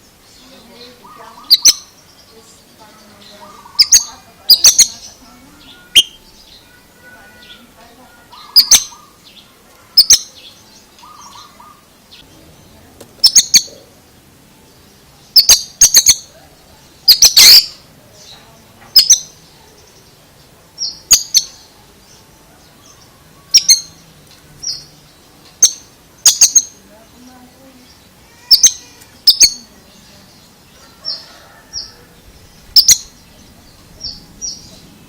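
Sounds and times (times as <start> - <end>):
bird giving sharp high calls: 0.8 - 2.0, 3.1 - 11.9, 13.2 - 13.9, 17.1 - 17.9, 23.4 - 24.0, 25.6 - 26.8, 28.3 - 29.7.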